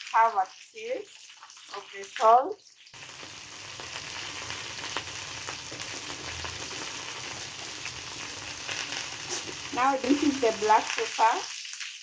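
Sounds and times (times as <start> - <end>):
chicken frying in oil: 0.0 - 12.0
oil crackling: 3.0 - 12.0.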